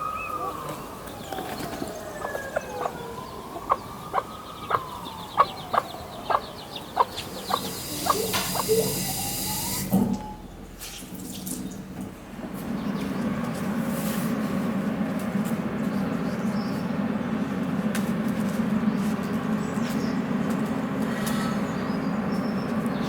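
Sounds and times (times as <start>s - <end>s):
distant siren wailing: 0.0s - 10.7s
chickens clucking: 0.2s - 9.7s.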